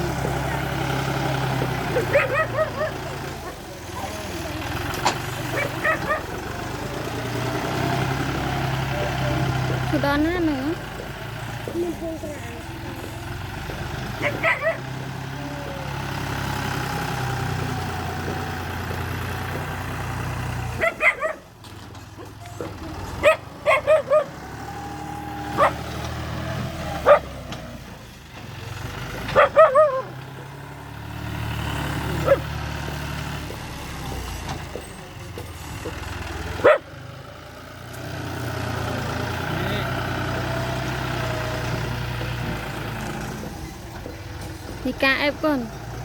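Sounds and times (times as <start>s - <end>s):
bulldozer diesel engine running: 0.0s - 46.0s
dog barking: 1.9s - 3.7s, 5.5s - 6.4s, 14.2s - 14.9s, 20.8s - 21.5s, 22.2s - 24.4s, 25.5s - 25.9s, 27.0s - 27.4s, 29.3s - 30.6s, 32.2s - 32.5s, 36.6s - 36.9s.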